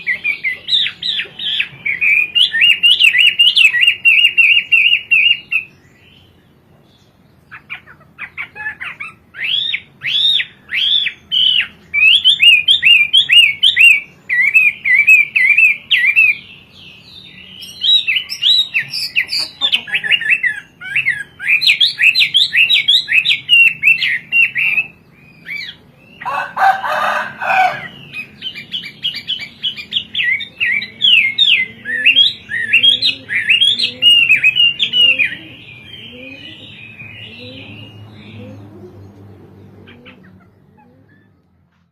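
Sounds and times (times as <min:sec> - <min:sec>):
bird singing whistled notes: 0:00.0 - 0:06.4, 0:09.3 - 0:26.2, 0:28.0 - 0:38.7
harsh bird call: 0:00.0 - 0:06.4, 0:07.4 - 0:39.0.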